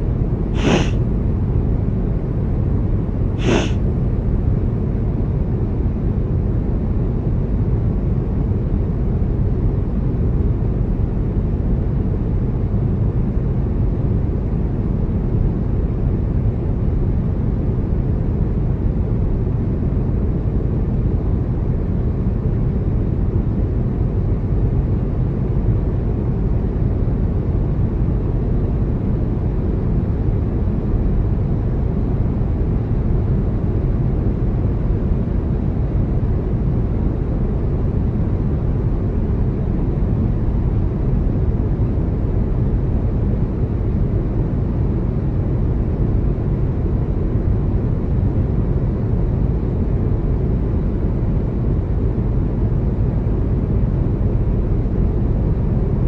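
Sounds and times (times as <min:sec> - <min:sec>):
aircraft cabin drone: 0:00.4 - 0:01.5, 0:03.4 - 0:04.3
man sniffing: 0:00.6 - 0:01.0, 0:03.4 - 0:03.8.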